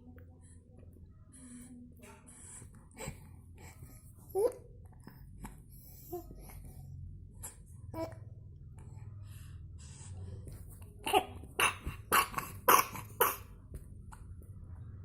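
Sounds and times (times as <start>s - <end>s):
baby coughing: 11.0s - 13.5s.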